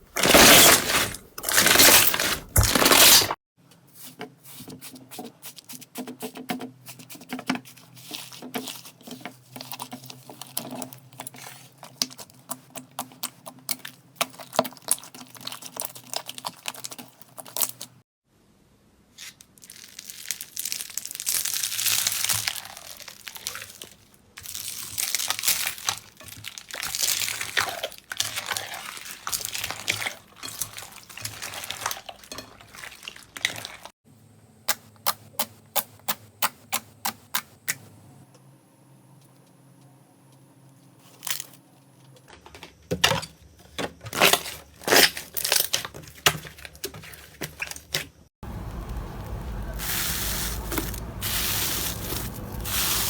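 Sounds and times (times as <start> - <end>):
slime crackling and popping: 19.6 - 27.6
low hum: 48.4 - 53.0.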